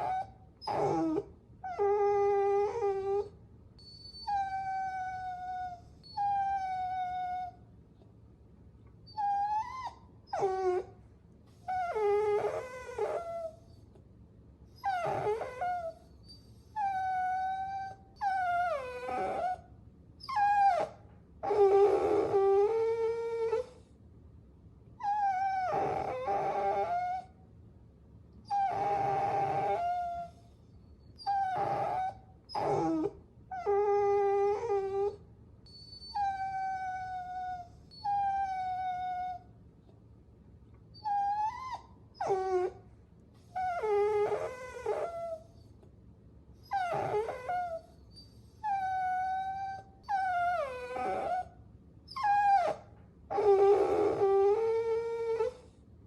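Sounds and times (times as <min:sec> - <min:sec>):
puppies whining: 0:00.0 - 0:07.6, 0:09.1 - 0:10.9, 0:11.6 - 0:13.9, 0:14.8 - 0:23.8, 0:25.0 - 0:27.3, 0:28.5 - 0:39.5, 0:40.9 - 0:42.8, 0:43.4 - 0:45.7, 0:46.6 - 0:55.8.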